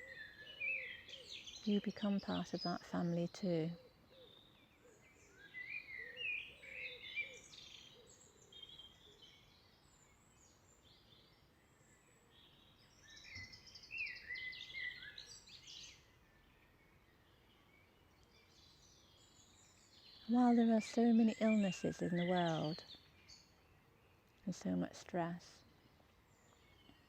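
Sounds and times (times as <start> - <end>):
birds chirping song: 0.0 - 27.0
outdoor background noise: 0.0 - 27.0.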